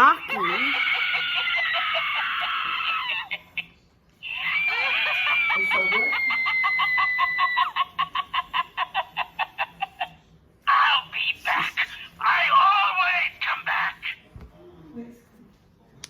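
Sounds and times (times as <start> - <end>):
doll speaking: 0.0 - 0.8.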